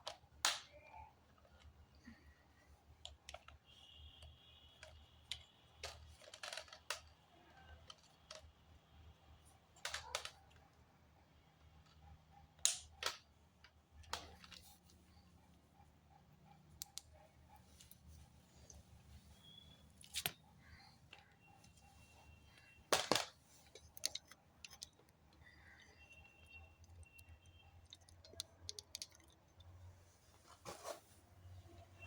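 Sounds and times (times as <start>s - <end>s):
objects clicking and knocking: 3.0s - 10.7s, 19.5s - 30.0s.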